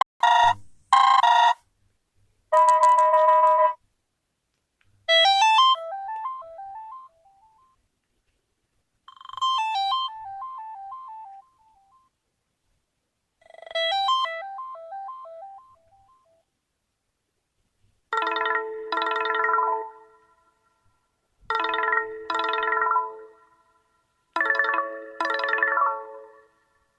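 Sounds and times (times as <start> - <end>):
electronic phone ringtone: 0.2 - 1.6, 2.6 - 3.8, 5.1 - 7.8, 9.1 - 12.1, 13.4 - 16.4, 18.1 - 20.6, 21.5 - 26.8.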